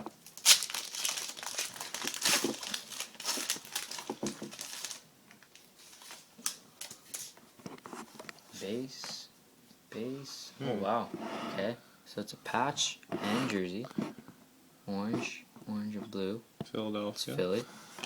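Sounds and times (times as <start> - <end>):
foil wrapper crinkling and tearing: 0.2 - 7.3.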